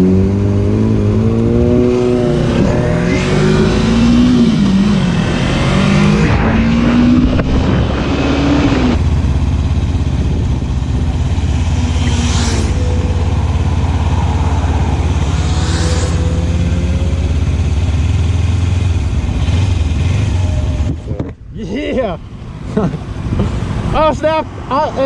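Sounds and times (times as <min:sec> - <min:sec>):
rushing noise: 0:01.6 - 0:18.6
brief whooshes: 0:05.2 - 0:09.0, 0:11.9 - 0:17.2
motorcycle engine running: 0:07.2 - 0:24.1.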